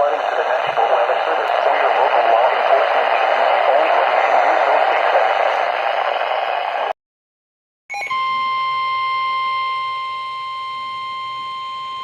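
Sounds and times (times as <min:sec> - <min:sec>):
high-pitched alarm beep: 0:07.9 - 0:12.0.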